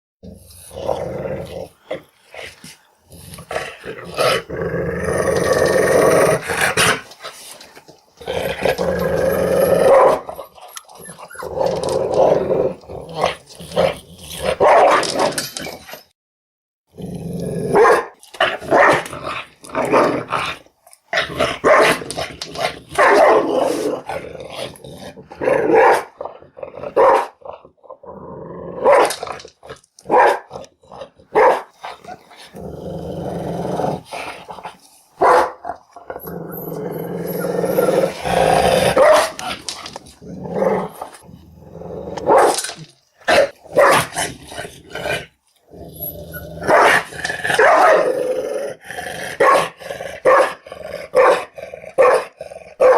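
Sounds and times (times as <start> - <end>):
dog growling: 0.2 - 14.6, 16.9 - 29.5, 30.4 - 52.9
dog barking: 9.9 - 10.2, 14.6 - 15.0, 17.7 - 19.0, 21.6 - 22.0, 23.0 - 23.5, 25.7 - 26.1, 27.0 - 27.4, 28.8 - 29.1, 30.1 - 30.5, 31.3 - 31.7, 35.2 - 35.6, 39.0 - 39.4, 42.3 - 42.6, 43.3 - 44.1, 46.7 - 48.0, 49.4 - 50.6, 51.2 - 52.9.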